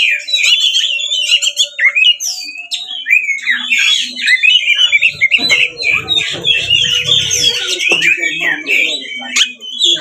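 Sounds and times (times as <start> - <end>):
bird song whistles and chatter: 0.0 - 10.0
low rough noise: 4.8 - 8.2.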